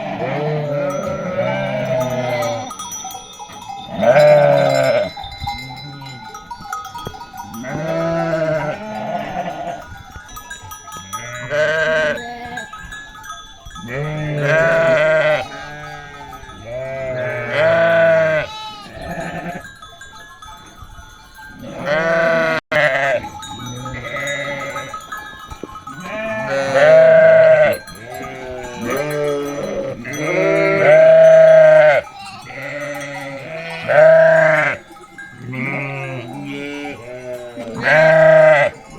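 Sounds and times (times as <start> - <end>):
sheep bleating: 0.0 - 2.8, 3.9 - 6.2, 7.6 - 9.8, 11.2 - 12.7, 13.9 - 19.6, 21.6 - 25.0, 26.0 - 38.9
faint bells ringing: 0.1 - 38.9.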